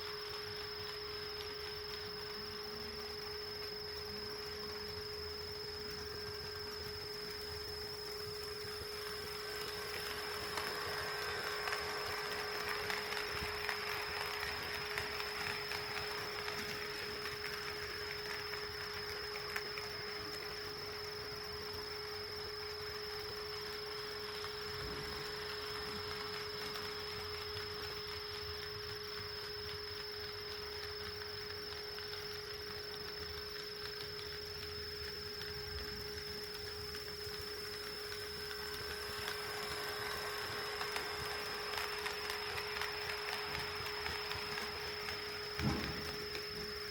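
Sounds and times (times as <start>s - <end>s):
steady high whine: 0.0s - 46.9s
model train rolling rattle: 37.8s - 46.9s.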